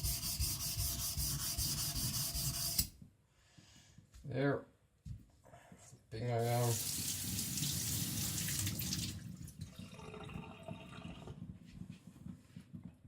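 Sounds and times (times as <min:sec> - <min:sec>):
faint rubbing sounds: 0:00.0 - 0:02.9
water running from a tap: 0:06.4 - 0:09.8.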